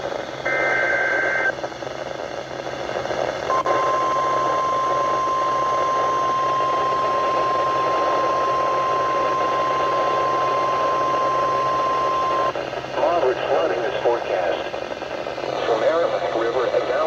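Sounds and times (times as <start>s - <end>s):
radio static hiss: 0.1s - 17.0s
steady warning alarm tone: 3.5s - 12.5s.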